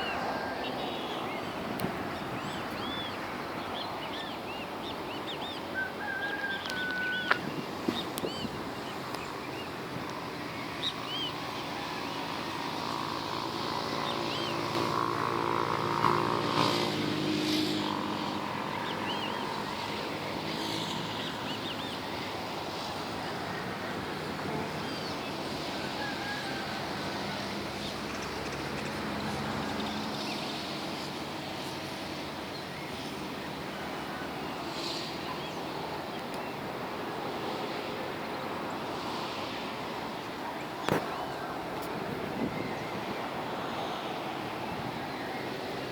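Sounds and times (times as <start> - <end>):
traffic hum: 0.0 - 45.9
small birds chirping: 6.6 - 12.6
vehicle passing: 9.0 - 36.0.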